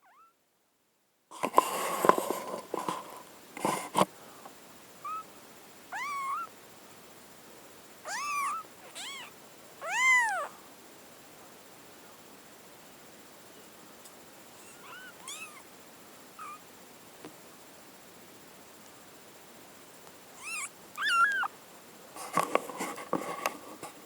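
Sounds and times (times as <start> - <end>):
kitten mewing: 5.0 - 5.3, 5.9 - 6.5, 8.1 - 10.5, 14.6 - 15.7, 16.4 - 16.6, 20.4 - 21.5
rustling with knocks: 22.2 - 24.0.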